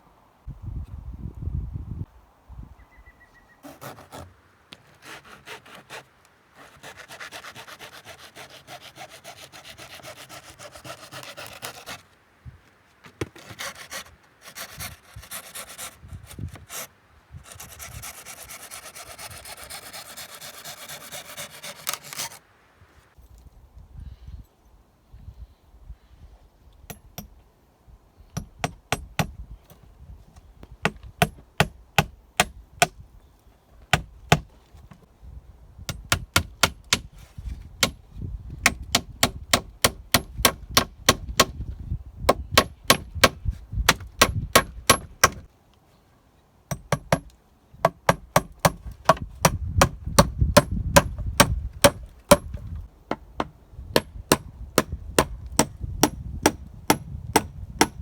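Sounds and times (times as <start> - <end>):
hammer driving nails into wood: 42.5 - 45.4, 46.7 - 58.0.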